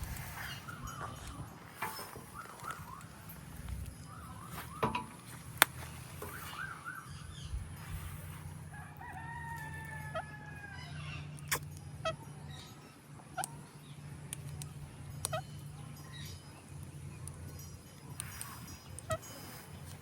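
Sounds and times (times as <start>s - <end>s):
steady low hum: 0.0s - 20.0s
parakeet chirping: 0.1s - 7.6s
rooster crowing: 8.6s - 11.3s.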